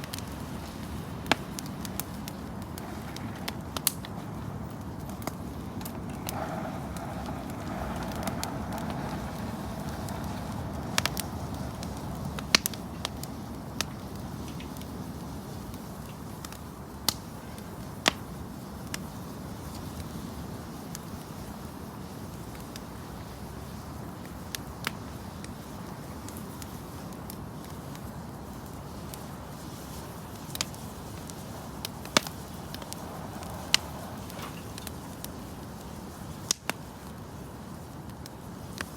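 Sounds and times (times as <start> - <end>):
firewood cracking and popping: 0.0 - 38.9
wind rushing: 0.3 - 14.4, 31.4 - 35.4.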